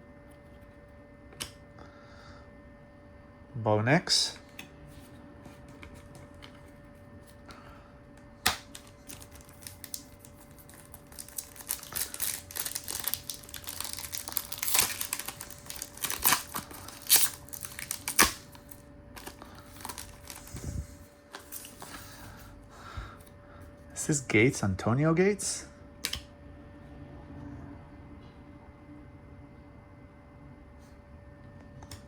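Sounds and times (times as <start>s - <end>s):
foil wrapper crinkling and tearing: 8.6s - 20.7s.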